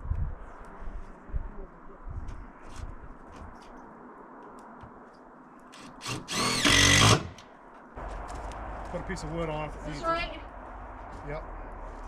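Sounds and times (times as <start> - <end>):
power drill whining: 5.8 - 7.4.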